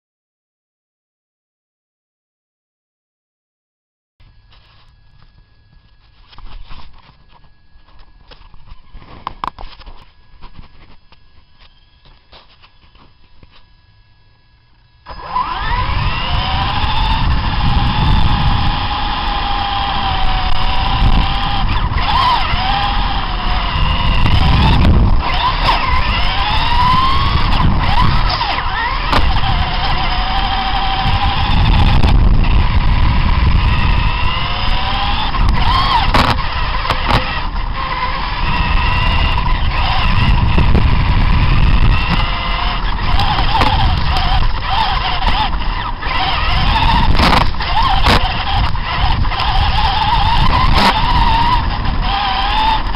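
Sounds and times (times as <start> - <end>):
toy truck motors whining: 4.3 - 52.9.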